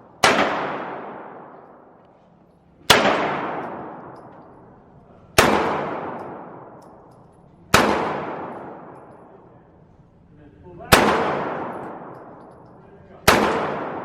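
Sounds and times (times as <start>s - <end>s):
gunshots: 0.2s - 1.6s, 2.8s - 4.4s, 5.4s - 6.8s, 7.7s - 9.0s, 10.9s - 12.4s, 13.2s - 14.0s.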